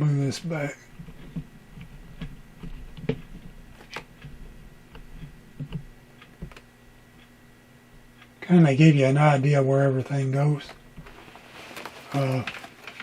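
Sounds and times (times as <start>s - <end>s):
faint steady hum: 0.0s - 13.0s
radio being handled clicks: 1.0s - 7.3s.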